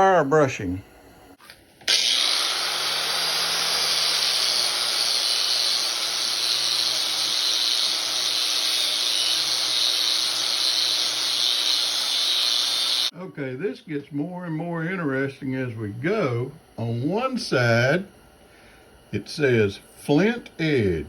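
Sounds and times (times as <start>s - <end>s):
tool motor hum: 1.8s - 13.1s.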